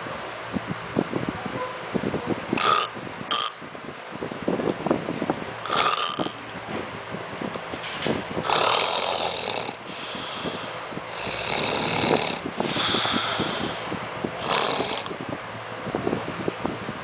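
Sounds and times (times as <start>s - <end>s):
person snoring: 5.7s - 6.3s, 8.4s - 15.1s.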